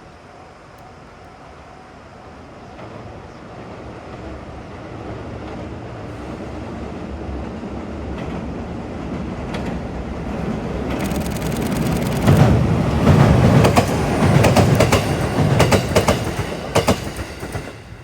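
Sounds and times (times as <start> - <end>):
electric train rumbling: 0.0 - 18.0
train wheels clicking over rail joints: 9.4 - 17.8.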